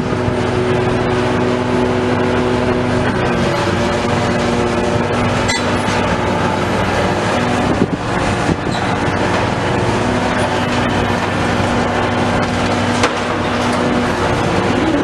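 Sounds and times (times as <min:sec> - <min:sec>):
diesel machinery running: 0:00.0 - 0:15.0
metallic clanks and knocks: 0:05.4 - 0:06.2.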